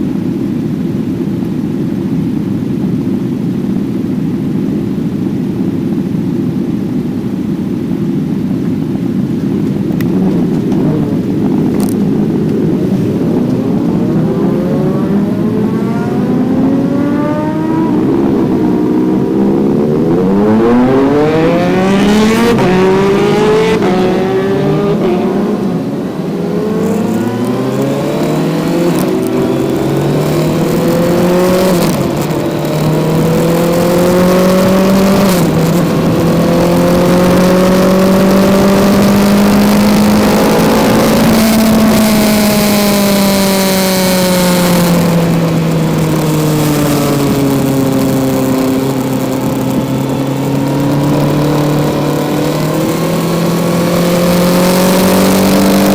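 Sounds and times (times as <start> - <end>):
motorcycle engine accelerating: 6.6 - 55.9
wind rushing: 9.8 - 42.8.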